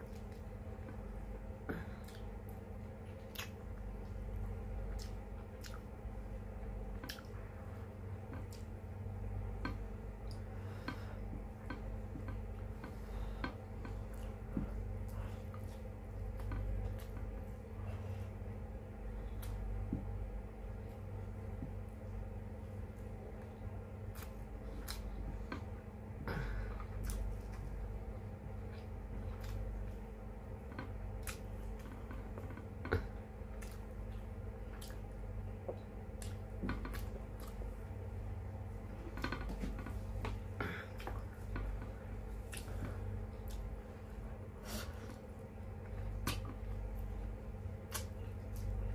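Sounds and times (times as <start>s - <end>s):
steady low hum: 0.0s - 48.9s
close chewing with mouth smacks: 2.0s - 6.0s, 6.9s - 7.5s, 23.0s - 25.7s, 26.8s - 27.8s, 28.5s - 30.0s, 30.6s - 37.8s, 39.2s - 43.8s, 44.8s - 48.9s.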